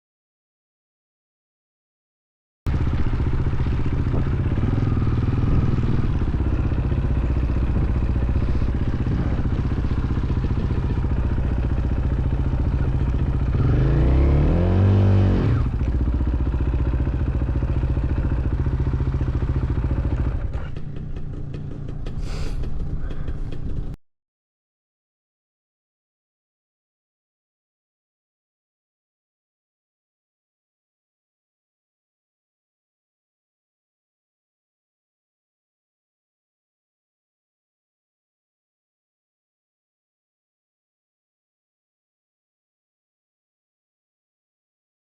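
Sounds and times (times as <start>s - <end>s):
dirt bike engine idling: 2.7s - 24.0s.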